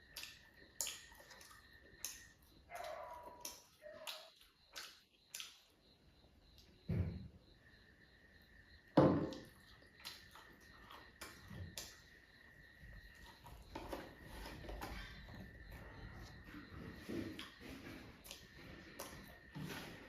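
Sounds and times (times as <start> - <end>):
chewing: 0.0 - 5.8, 9.3 - 12.1, 13.0 - 20.0.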